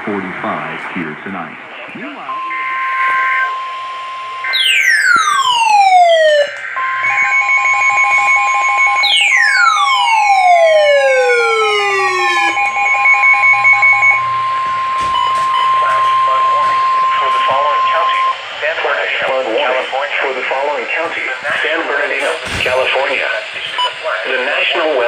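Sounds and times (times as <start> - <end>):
warbling data tones: 2.3 - 20.7
steady high tone with pulsing tones: 2.3 - 20.9.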